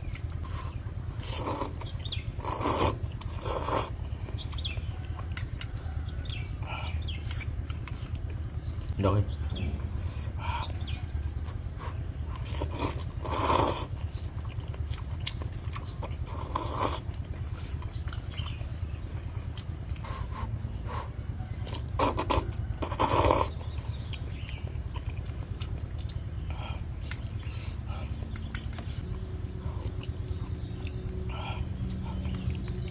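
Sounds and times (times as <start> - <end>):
low hum: 0.0 - 32.9
mouth and breath sounds: 9.6 - 29.0.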